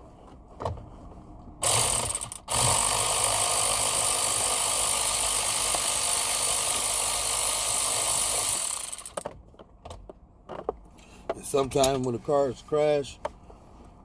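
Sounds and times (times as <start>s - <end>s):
cordless power tool spinning bolts: 1.6s - 9.3s.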